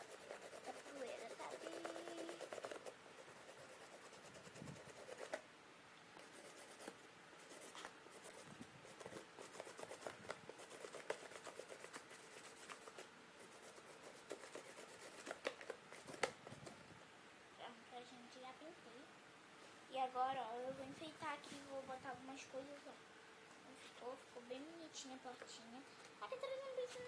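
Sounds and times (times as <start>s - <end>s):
paint strokes rubbing on cardboard: 0.0s - 5.4s, 6.2s - 16.6s.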